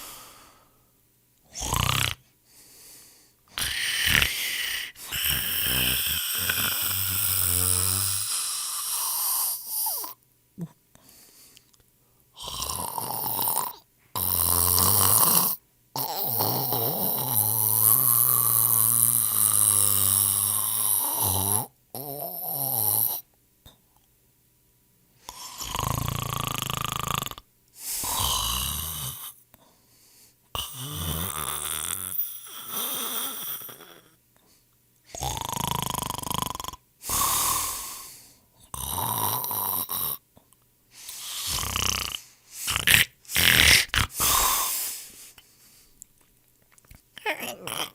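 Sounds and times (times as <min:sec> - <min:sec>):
people snoring: 0:01.5 - 0:02.2, 0:03.6 - 0:10.7, 0:12.4 - 0:23.2, 0:25.3 - 0:27.4, 0:28.0 - 0:29.4, 0:30.6 - 0:34.1, 0:35.1 - 0:40.2, 0:41.1 - 0:45.0.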